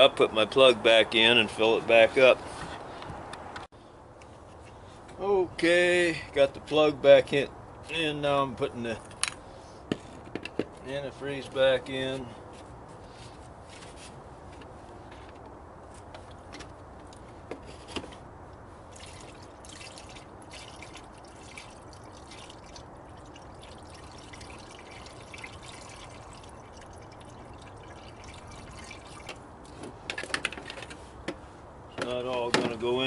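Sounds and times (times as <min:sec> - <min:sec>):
liquid trickling into radiator: 0:18.8 - 0:29.8.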